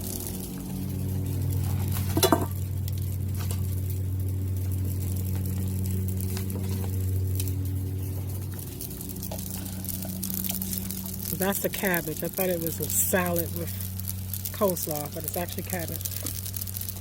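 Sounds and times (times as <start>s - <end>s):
food sizzling on griddle: 0.0s - 17.0s
steady low hum: 0.0s - 17.0s
utensil clanging on griddle: 2.0s - 2.6s.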